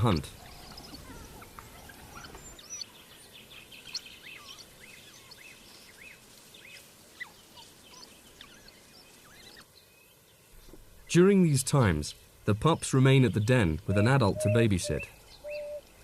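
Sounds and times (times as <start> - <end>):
high chirping calls: 0.0 - 9.7, 13.2 - 16.0
faint outdoor ambience: 0.0 - 16.0.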